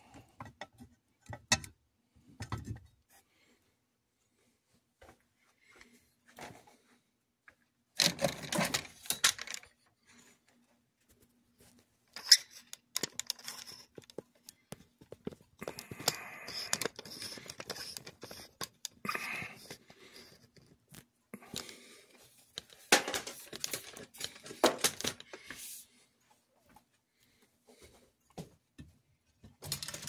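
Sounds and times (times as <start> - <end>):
clicks and knocks of handling: 0.1 - 1.8, 7.5 - 9.8, 12.1 - 19.0, 19.6 - 25.6, 28.4 - 30.0.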